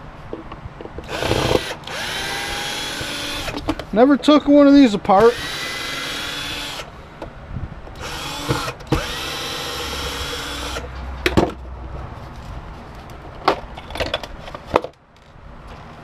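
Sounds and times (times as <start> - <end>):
power drill motor whining: 1.0 - 3.7, 5.2 - 6.9, 8.0 - 10.8.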